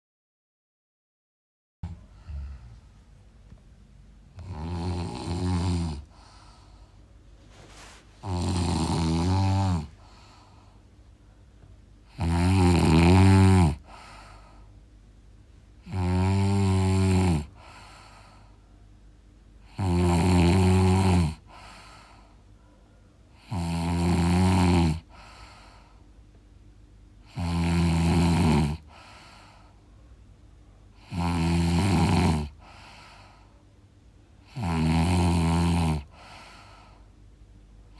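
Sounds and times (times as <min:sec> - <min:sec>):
faint breath: 0:01.9 - 0:03.1, 0:06.0 - 0:08.3, 0:09.9 - 0:11.5, 0:13.8 - 0:14.8, 0:17.5 - 0:18.8, 0:21.4 - 0:23.4, 0:25.1 - 0:26.2, 0:28.9 - 0:30.1, 0:32.6 - 0:33.7, 0:36.1 - 0:37.2
loud rattling snoring: 0:04.4 - 0:06.4, 0:08.2 - 0:10.2, 0:12.1 - 0:14.0, 0:15.8 - 0:18.0, 0:19.7 - 0:21.8, 0:23.4 - 0:25.1, 0:27.3 - 0:29.4, 0:31.0 - 0:33.0, 0:34.5 - 0:36.3.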